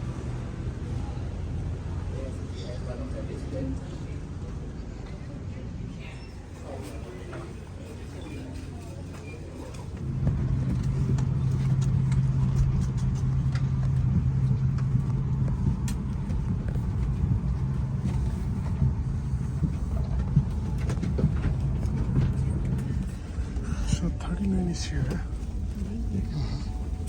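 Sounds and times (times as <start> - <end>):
constant low hum: 0.0 - 27.0
loud low rumble: 10.0 - 27.0.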